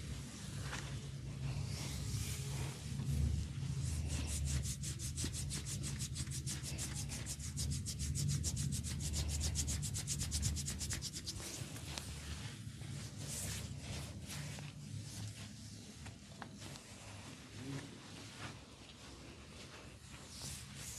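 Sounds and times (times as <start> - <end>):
hands rubbing over head: 3.6 - 12.1.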